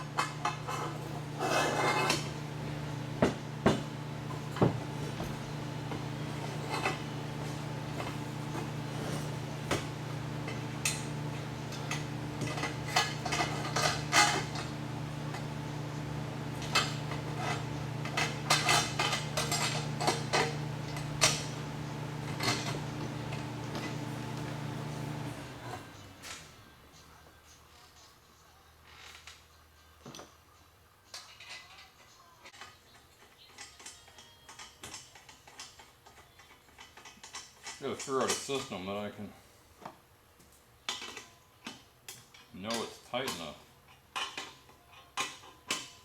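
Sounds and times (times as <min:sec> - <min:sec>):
steady low hum: 0:00.0 - 0:26.0
metal tools clinking and tapping: 0:03.7 - 0:15.5, 0:16.6 - 0:21.6, 0:31.1 - 0:38.8, 0:40.9 - 0:46.0.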